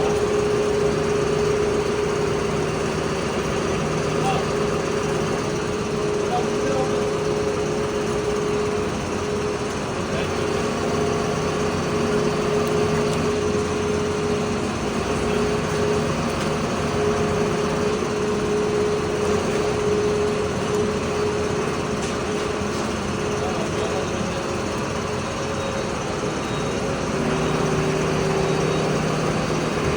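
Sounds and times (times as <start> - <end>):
small engine running: 0.0 - 29.9.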